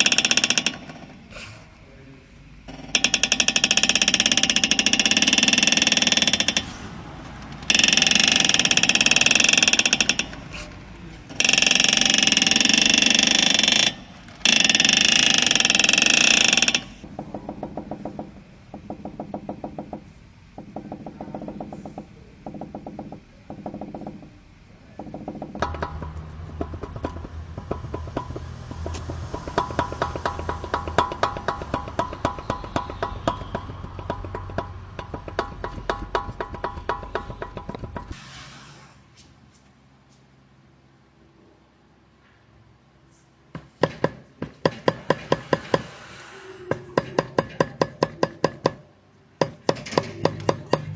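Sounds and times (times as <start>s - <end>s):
air tool hammering: 0.0s - 1.7s, 2.7s - 24.3s, 25.0s - 38.2s, 43.6s - 50.9s
rhythmic clicking: 25.6s - 38.1s.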